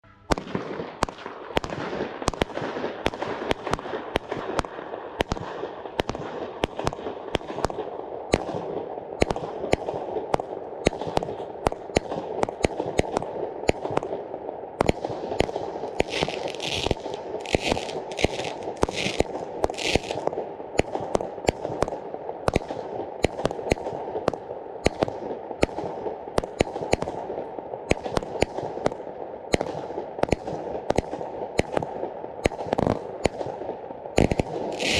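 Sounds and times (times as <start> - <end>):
fireworks shots: 0.0 - 34.9
steady hiss: 15.2 - 20.3.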